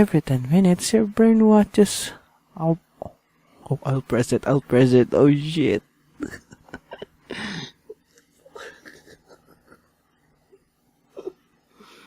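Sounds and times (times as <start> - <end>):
man stifled giggling: 6.2 - 11.6.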